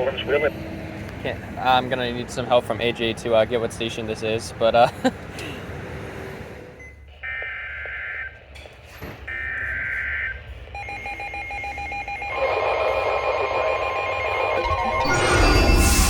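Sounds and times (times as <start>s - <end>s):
warbling data tones: 10.8s - 16.0s.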